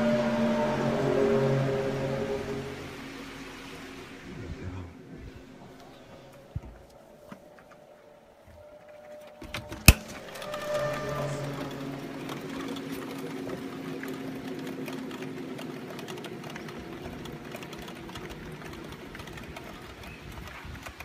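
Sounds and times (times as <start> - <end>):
low droning hum: 0.0 - 19.9
faint clicks: 5.6 - 21.0.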